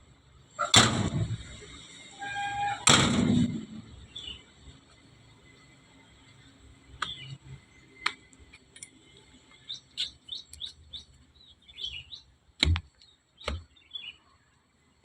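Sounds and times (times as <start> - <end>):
loud knocks: 0.7 - 1.6, 2.8 - 3.9
small birds chirping: 3.8 - 15.0.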